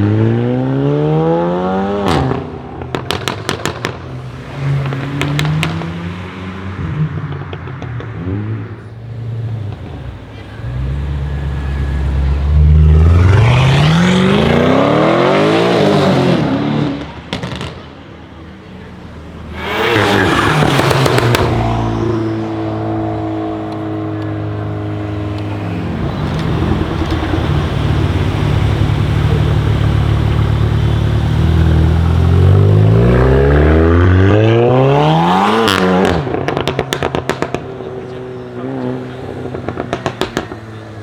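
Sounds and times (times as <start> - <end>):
car engine revving: 0.0 - 41.0
exhaust crackles and pops: 2.1 - 6.0, 7.2 - 8.4, 17.3 - 18.0, 23.6 - 33.3, 35.8 - 41.0.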